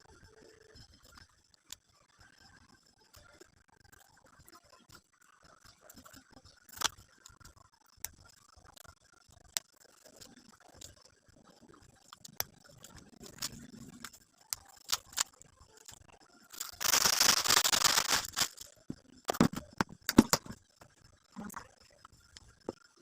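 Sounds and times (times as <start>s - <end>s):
wrapping paper tearing: 14.8s - 15.3s, 16.5s - 18.7s
box knocking: 19.3s - 20.6s.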